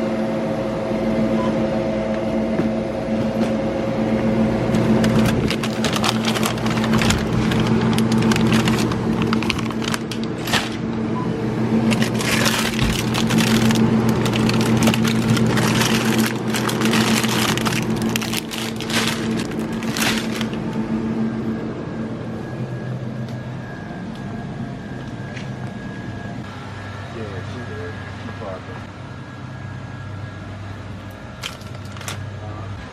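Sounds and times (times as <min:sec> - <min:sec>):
steady low hum: 0:00.0 - 0:32.9
crackling and rustling: 0:04.7 - 0:10.8, 0:11.9 - 0:20.6, 0:31.4 - 0:32.2.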